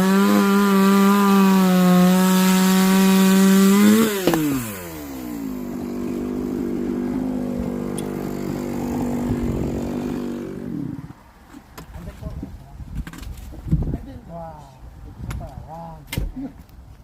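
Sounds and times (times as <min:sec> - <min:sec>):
chainsaw engine running: 0:00.0 - 0:11.1.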